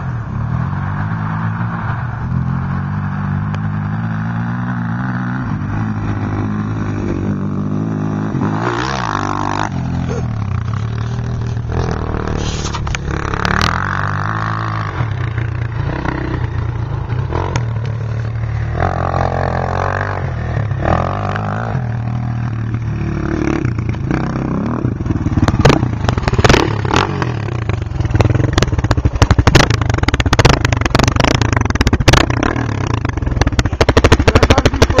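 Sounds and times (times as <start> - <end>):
quad engine running loud: 2.2 - 35.0
exhaust cracks and pops: 10.6 - 13.1, 27.9 - 32.4, 33.0 - 35.0.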